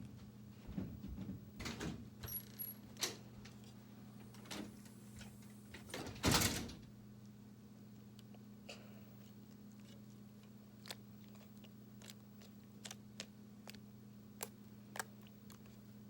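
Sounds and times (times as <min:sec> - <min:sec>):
slime squelching and clicking: 0:10.8 - 0:13.8, 0:14.4 - 0:15.8.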